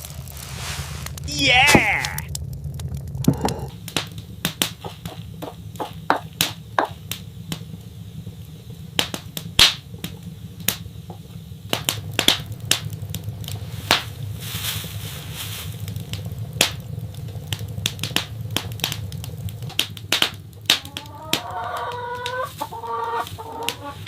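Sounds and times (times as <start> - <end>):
steady low hum: 0.0 - 20.8
sharp irregular clicks and taps: 16.1 - 21.1.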